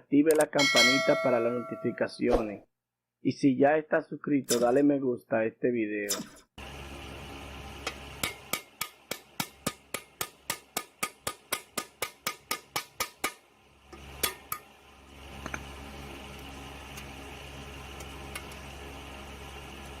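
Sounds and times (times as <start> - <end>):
hammer striking metal: 0.6 - 2.0, 4.5 - 4.8, 7.8 - 13.4.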